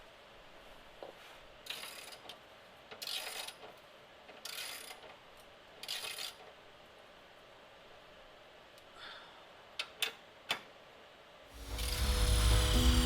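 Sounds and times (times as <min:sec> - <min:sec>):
ratchet wrench clicking: 0:01.7 - 0:03.6, 0:04.4 - 0:05.1, 0:05.8 - 0:06.4.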